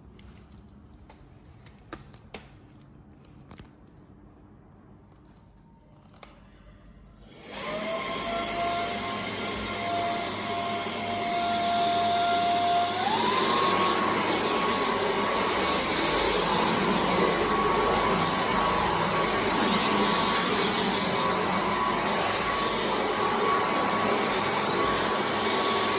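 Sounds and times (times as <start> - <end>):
vacuum cleaner motor whine: 7.2 - 25.9.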